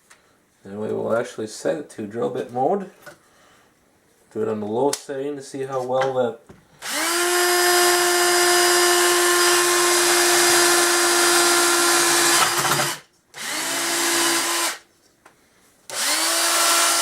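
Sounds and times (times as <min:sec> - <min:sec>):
cordless drill whining: 0:06.8 - 0:14.8, 0:15.9 - 0:17.0.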